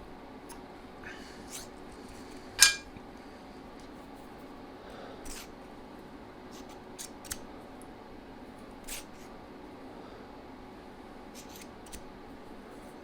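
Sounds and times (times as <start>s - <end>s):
metallic clicks and scrapes: 2.6s - 2.9s.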